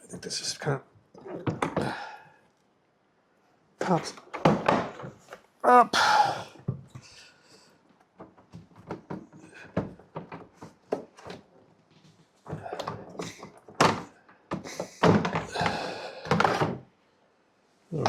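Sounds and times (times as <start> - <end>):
plastic knocks clicks and scraping: 1.2 - 2.0, 3.8 - 5.5, 7.9 - 16.9.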